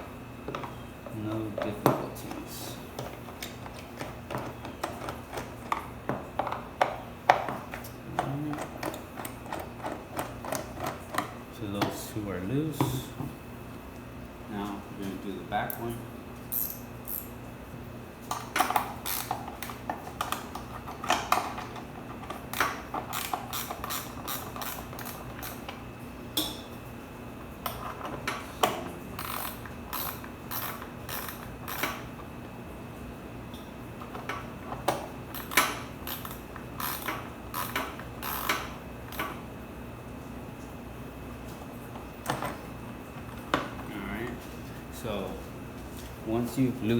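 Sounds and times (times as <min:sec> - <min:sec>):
ratchet wrench clicking: 0:16.5 - 0:17.3, 0:19.1 - 0:19.4, 0:22.6 - 0:25.6, 0:29.2 - 0:32.0, 0:35.4 - 0:38.6.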